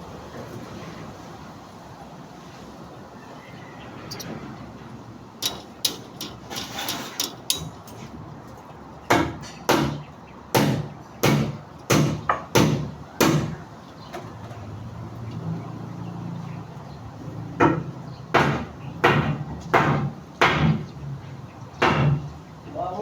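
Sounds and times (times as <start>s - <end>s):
hammer strikes ringing: 5.4s - 7.8s.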